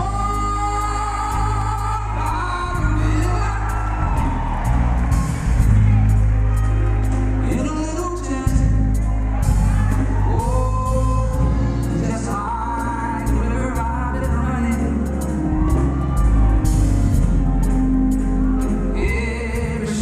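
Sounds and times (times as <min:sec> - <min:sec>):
person singing with a band: 0:00.0 - 0:04.4
heavy bass: 0:00.0 - 0:20.0
steady drum beat: 0:01.4 - 0:20.0.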